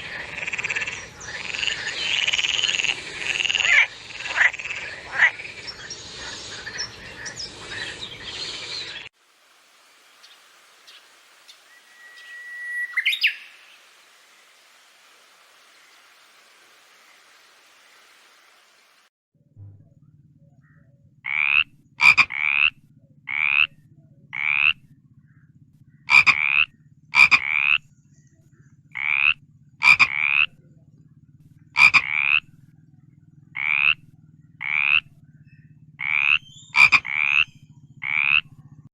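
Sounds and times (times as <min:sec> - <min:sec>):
frog croaking: 0:00.0 - 0:08.0, 0:20.6 - 0:27.9, 0:28.9 - 0:32.6, 0:33.4 - 0:35.2, 0:35.9 - 0:38.6.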